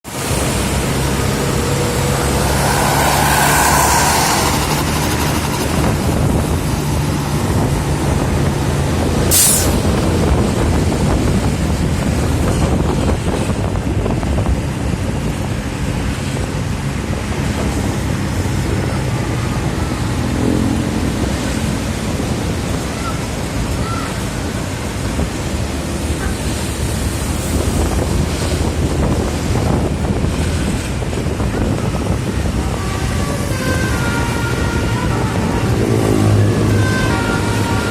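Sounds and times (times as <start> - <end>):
traffic and road noise: 0.0 - 37.9
bus engine running: 0.1 - 37.9
air brake hiss: 9.3 - 10.0.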